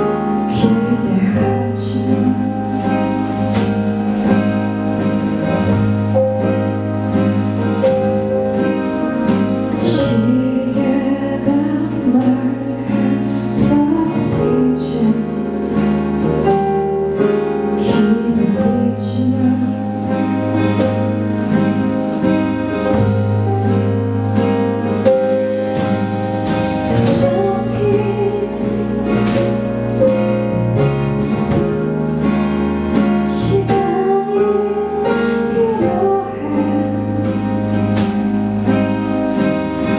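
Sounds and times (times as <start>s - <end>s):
woman singing: 0.0s - 3.6s, 9.8s - 16.0s, 17.6s - 20.7s, 26.9s - 29.4s, 33.2s - 37.7s
live indie pop band: 0.0s - 39.9s
sustained bass notes: 0.0s - 39.9s.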